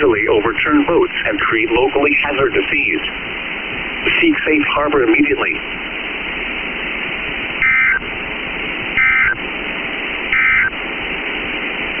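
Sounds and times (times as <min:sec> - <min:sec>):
radio static hiss: 0:00.0 - 0:12.0
two-tone digital data bursts: 0:07.6 - 0:08.0, 0:09.0 - 0:09.4, 0:10.3 - 0:10.7.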